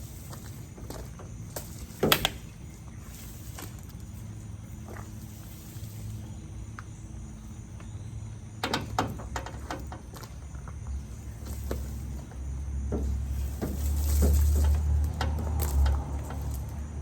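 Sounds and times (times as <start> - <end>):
sharp clicks and knocks: 0.8 - 2.6, 8.6 - 10.9, 11.6 - 16.9.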